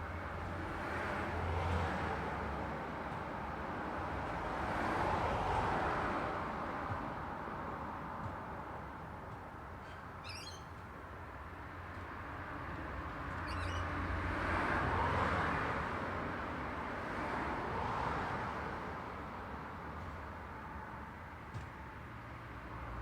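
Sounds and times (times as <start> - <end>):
high bird chirps: 10.2 - 10.7, 13.4 - 13.9.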